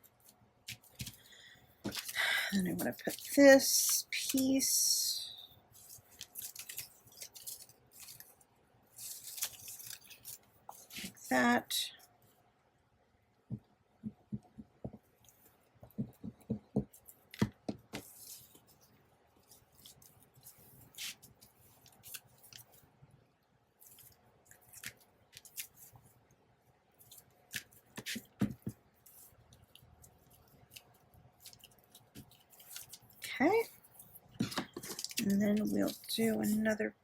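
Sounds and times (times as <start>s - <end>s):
paper rustling: 5.8s - 11.2s, 27.0s - 36.6s.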